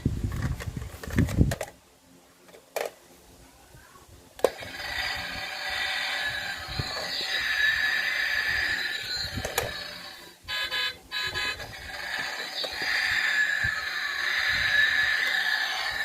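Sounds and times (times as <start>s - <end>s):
electronic engine effect: 4.5s - 16.0s
buzzy horn-like beeps: 8.4s - 12.4s.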